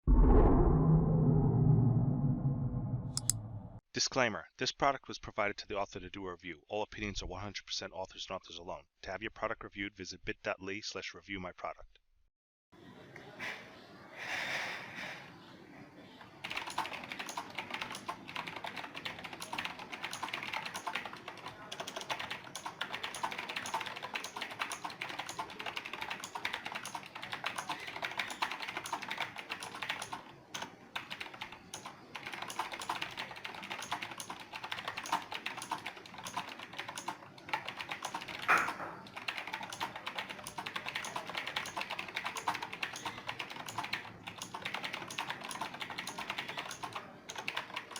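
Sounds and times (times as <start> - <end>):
mechanical keyboard typing: 16.4 - 47.9.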